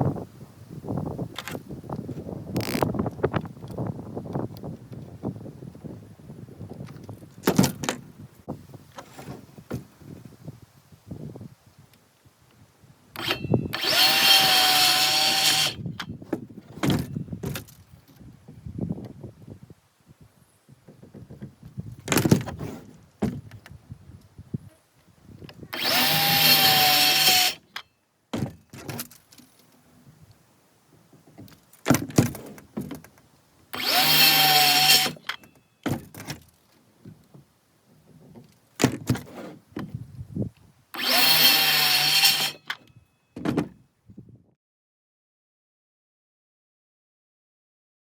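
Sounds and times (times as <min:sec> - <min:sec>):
power saw cutting wood: 0:13.2 - 0:15.8, 0:25.7 - 0:27.7, 0:33.7 - 0:35.4, 0:41.0 - 0:42.8.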